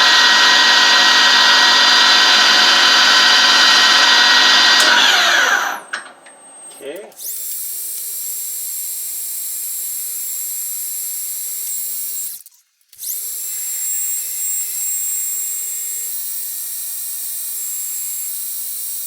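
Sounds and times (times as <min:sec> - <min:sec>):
metal lathe running: 0:00.0 - 0:07.3.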